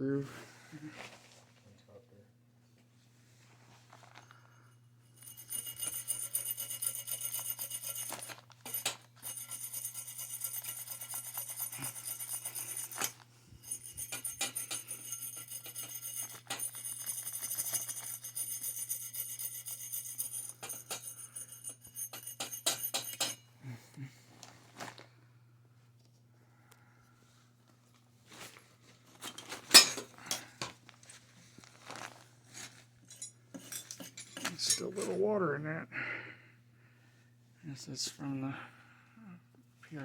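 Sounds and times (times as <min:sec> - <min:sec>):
wire brush scrubbing metal pipe: 0:05.2 - 0:23.4.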